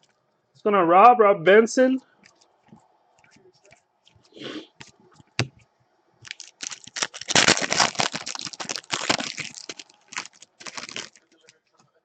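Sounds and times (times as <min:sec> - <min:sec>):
card pack wrapper crinkling: 0:06.2 - 0:11.6.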